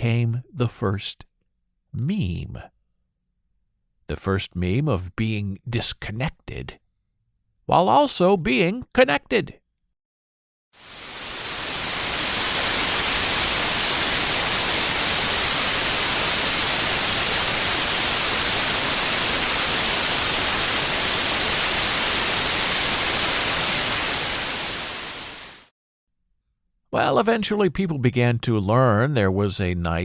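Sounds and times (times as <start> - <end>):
white noise static hiss: 10.8 - 25.7.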